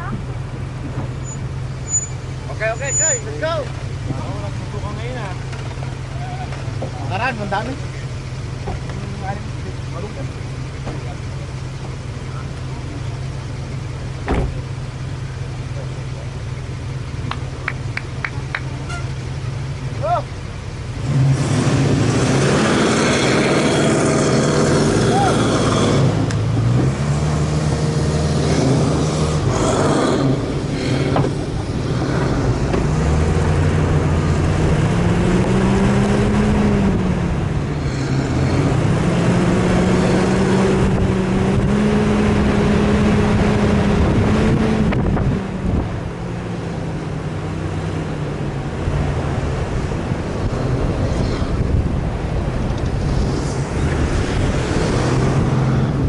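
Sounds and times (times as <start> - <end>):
off-road engine revving: 0.0 - 56.0
steady rushing noise: 48.5 - 56.0.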